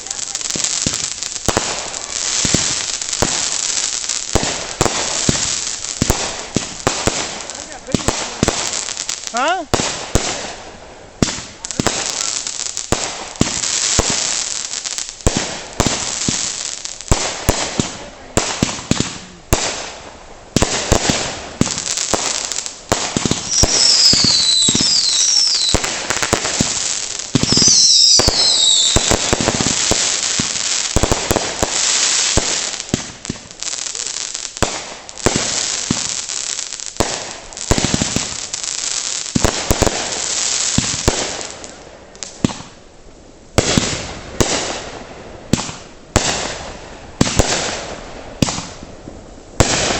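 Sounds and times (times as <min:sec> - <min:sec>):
fireworks bangs and pops: 0:00.0 - 0:49.9
fireworks crackling hiss: 0:00.0 - 0:49.9
falling fireworks whistles: 0:11.2 - 0:14.6, 0:21.0 - 0:41.5.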